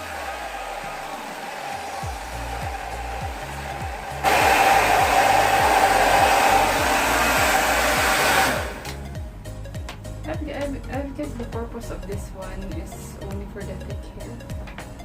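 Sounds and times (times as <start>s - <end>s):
hair dryer blowing air: 0.0s - 9.0s
background music with low beat: 0.0s - 15.0s.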